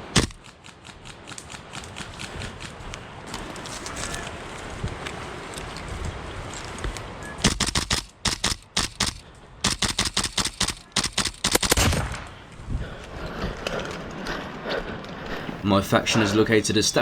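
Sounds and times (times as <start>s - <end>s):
airsoft rifle firing: 0.0s - 2.2s, 7.4s - 12.4s
wind rumble: 0.0s - 17.0s.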